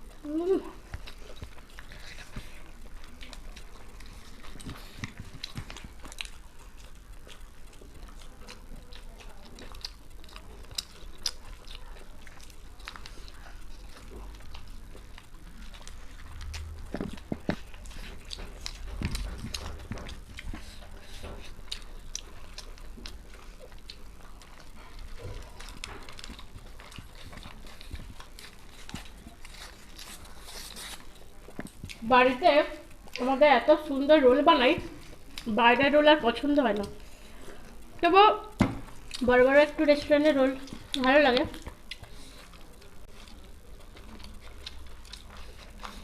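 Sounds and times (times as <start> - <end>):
person biting and chewing food: 0.0 - 32.0, 40.6 - 46.0.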